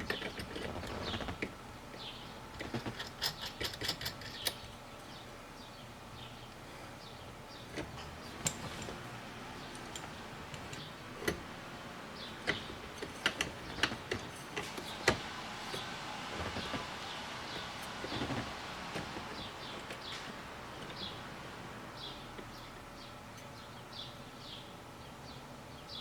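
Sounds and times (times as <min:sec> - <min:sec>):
metallic clicks of hand tools: 0:02.6 - 0:04.7.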